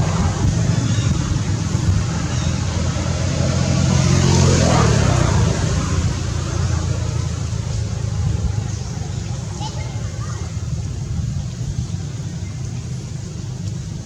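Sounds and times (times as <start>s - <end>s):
vehicle engine running: 0.0s - 14.0s.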